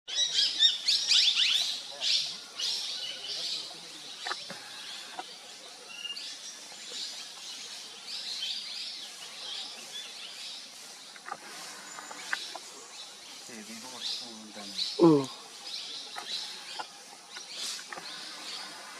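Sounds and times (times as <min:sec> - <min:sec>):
background hiss: 0:00.1 - 0:18.9
birds chirping: 0:00.1 - 0:18.9
faint sweeps: 0:07.3 - 0:18.9.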